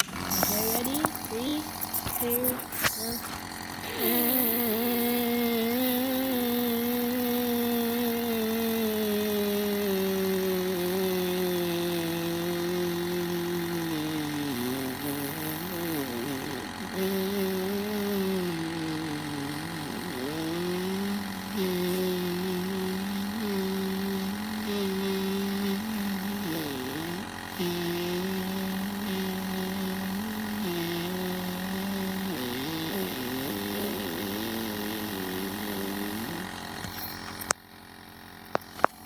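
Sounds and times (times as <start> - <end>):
buzzing fart noise: 0.0 - 39.0.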